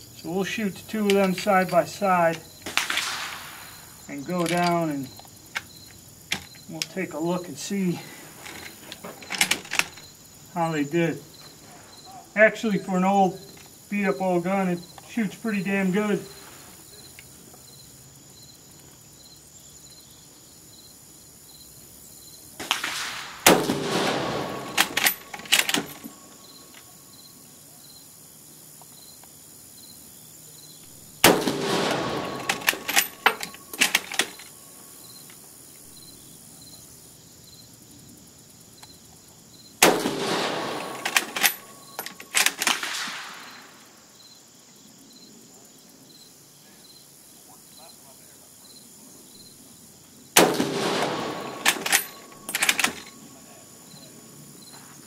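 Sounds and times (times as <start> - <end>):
rifle bolt metallic clicks: 1.0 - 1.4, 4.4 - 5.7, 22.7 - 26.2, 31.2 - 34.5, 39.8 - 43.4, 50.8 - 53.1
rifle shots echoing: 1.0 - 5.1, 22.6 - 26.5, 31.0 - 34.6, 39.8 - 43.9, 50.4 - 53.3.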